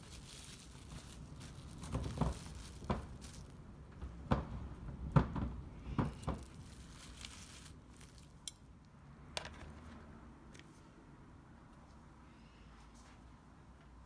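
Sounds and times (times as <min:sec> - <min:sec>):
cling film crinkling: 0:00.0 - 0:03.6, 0:06.1 - 0:08.5.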